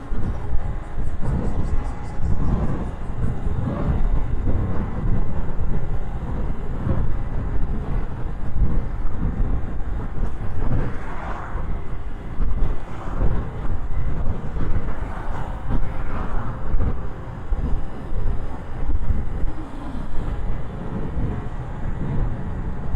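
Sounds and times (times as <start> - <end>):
road noise: 0.0 - 22.9
wind buffeting microphone: 0.0 - 22.9.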